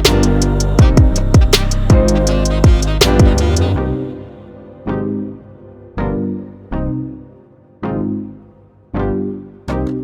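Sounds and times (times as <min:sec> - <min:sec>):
instrumental background music: 0:00.0 - 0:10.0.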